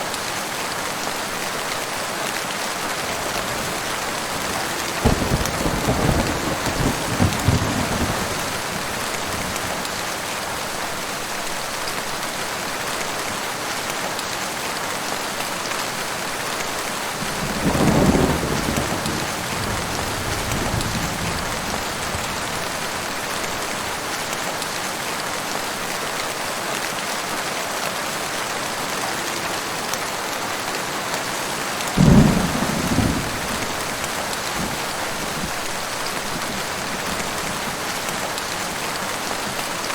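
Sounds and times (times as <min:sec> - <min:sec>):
heavy rain falling: 0:00.0 - 0:39.9
thunder rumbling: 0:02.8 - 0:09.9, 0:17.2 - 0:23.6, 0:32.0 - 0:38.4.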